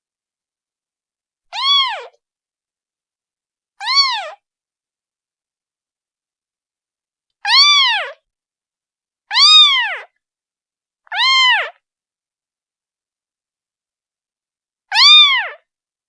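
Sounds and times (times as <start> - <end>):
kitten meowing: 1.5 - 2.2, 3.8 - 4.4, 7.5 - 8.2, 9.3 - 10.1, 11.1 - 11.8, 14.9 - 15.6.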